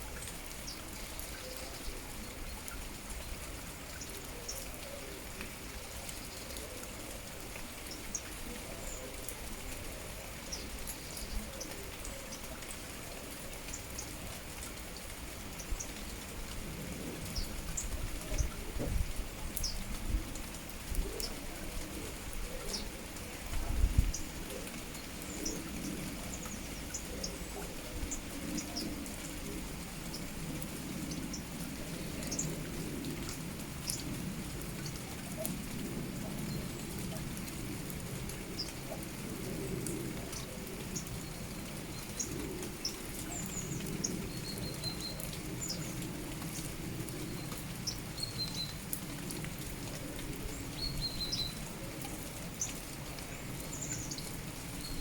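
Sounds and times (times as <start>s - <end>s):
steady rain falling: 0.0s - 55.0s
small birds chirping: 10.3s - 12.5s, 19.6s - 19.9s, 22.6s - 23.1s, 23.9s - 29.5s, 39.8s - 46.2s, 47.1s - 48.9s, 50.3s - 55.0s.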